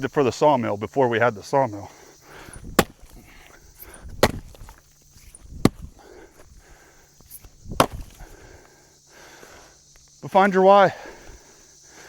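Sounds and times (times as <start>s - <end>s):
firewood being split: 2.3s - 6.6s, 7.2s - 8.6s.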